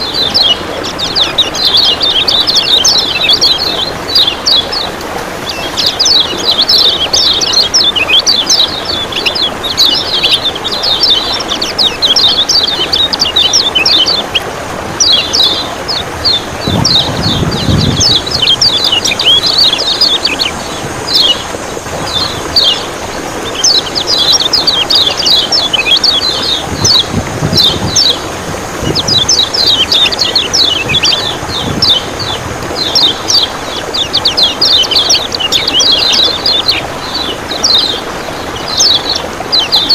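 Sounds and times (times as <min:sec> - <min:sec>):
running water rushing: 0:00.0 - 0:39.9
dull low thumps: 0:16.4 - 0:18.8.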